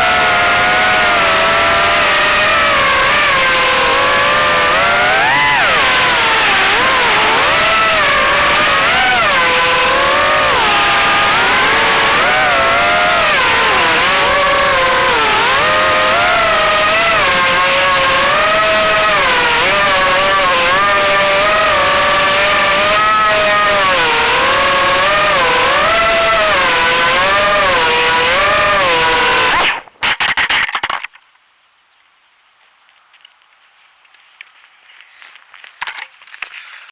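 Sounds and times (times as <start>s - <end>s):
drone motors whining: 0.0s - 30.2s.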